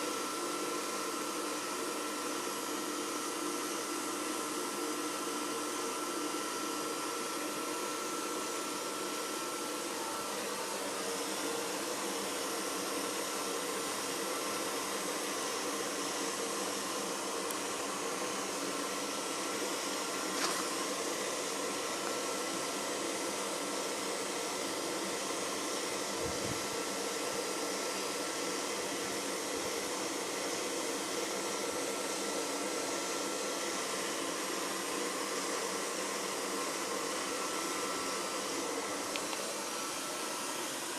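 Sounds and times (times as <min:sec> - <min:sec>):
blower fan whirring: 0:00.0 - 0:40.9
click: 0:39.1 - 0:39.4.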